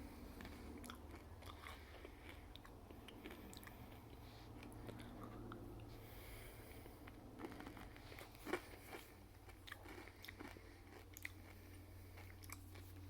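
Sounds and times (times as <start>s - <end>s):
candy crunching: 7.1s - 13.0s.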